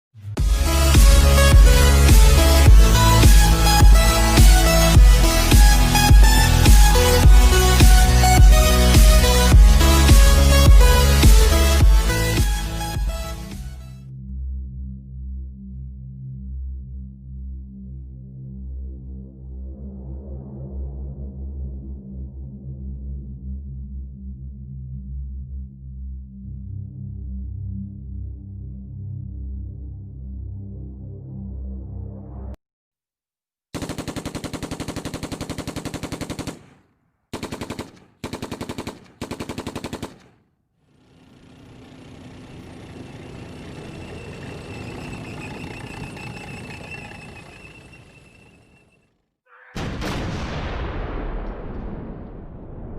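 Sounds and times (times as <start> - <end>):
ambient electronic music: 0.2 - 32.6
machine-gun fire: 33.8 - 40.4.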